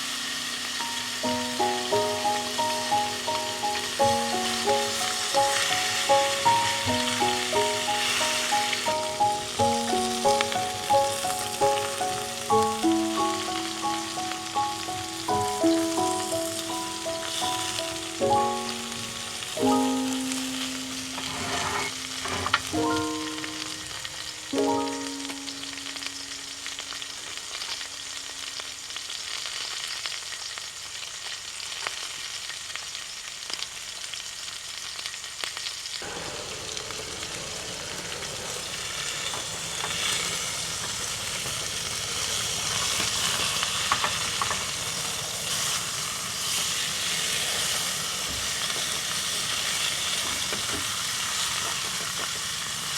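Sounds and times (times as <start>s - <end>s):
food sizzling in a skillet: 0.0s - 52.9s
ringing musical notes: 0.7s - 27.0s.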